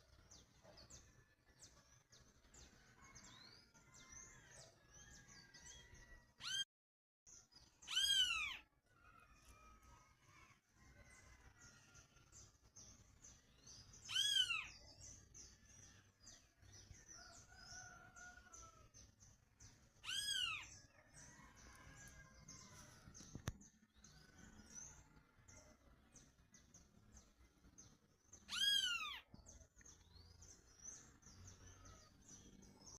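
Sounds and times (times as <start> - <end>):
small birds chirping: 7.3 - 9.8, 11.0 - 32.9.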